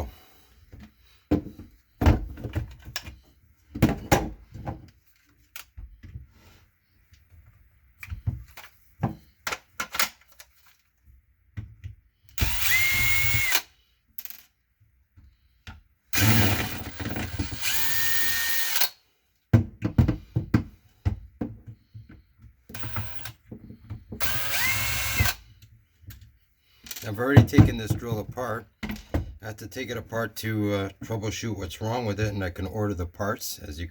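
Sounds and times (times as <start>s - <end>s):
drill trigger clicks and knocks: 12.4s - 13.6s, 24.2s - 25.4s
cordless drill motor whine: 12.4s - 13.7s, 16.2s - 18.9s, 22.8s - 23.3s, 24.2s - 25.4s.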